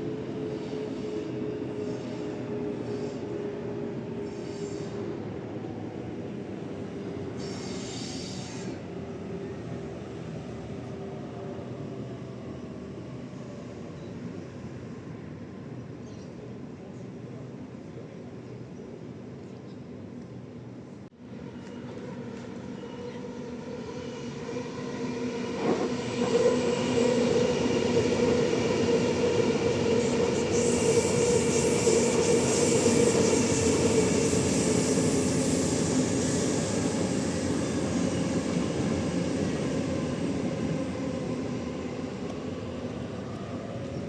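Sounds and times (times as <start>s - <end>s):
electric train passing: 21.2s - 44.0s.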